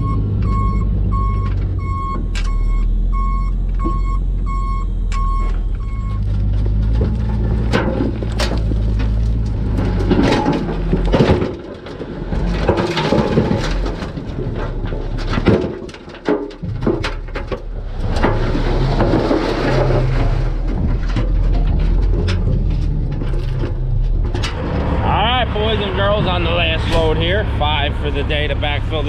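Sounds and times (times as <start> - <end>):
heavy diesel engine under load: 0.0 - 29.0
machine clanks and knocks: 6.3 - 24.9.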